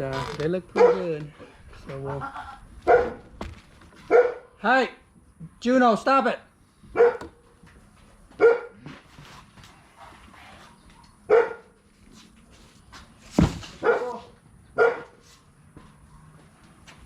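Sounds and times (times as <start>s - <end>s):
dog barking: 0.8s - 1.1s, 2.9s - 3.2s, 4.1s - 4.6s, 6.9s - 7.2s, 8.4s - 8.8s, 11.3s - 11.7s, 13.8s - 15.2s
heavy thump: 13.3s - 13.9s.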